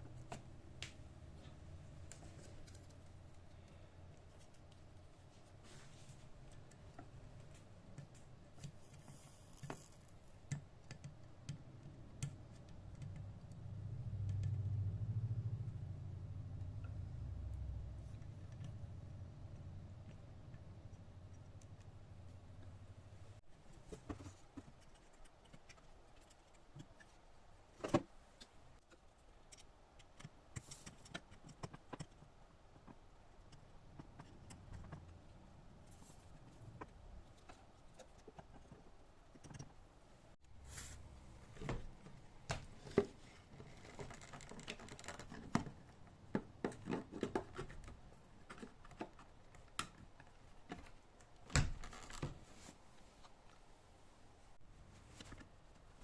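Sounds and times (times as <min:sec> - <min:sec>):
low steady hum: 0:00.0 - 0:56.0
faint clicks and taps: 0:06.4 - 0:14.8, 0:27.8 - 0:35.3.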